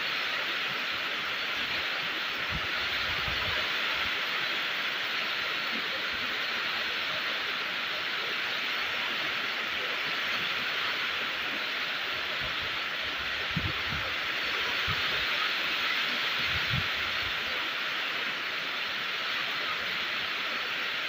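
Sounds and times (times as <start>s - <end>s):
steady rain falling: 0.0s - 21.0s.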